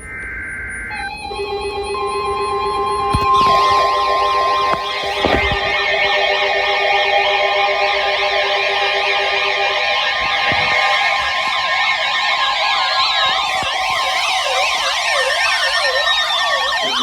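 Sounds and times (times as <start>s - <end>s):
electronic sirens sweeping: 0.0s - 17.0s
slow falling siren glides: 0.0s - 17.0s
steady tones: 0.0s - 17.0s.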